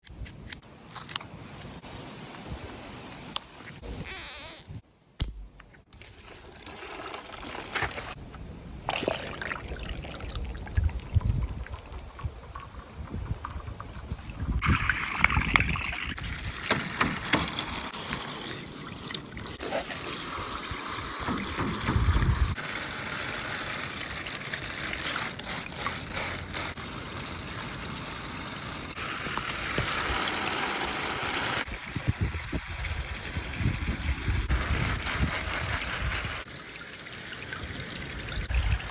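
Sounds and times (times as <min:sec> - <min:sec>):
water running and trickling: 0:08.9 - 0:38.9
low thumps: 0:21.3 - 0:22.6.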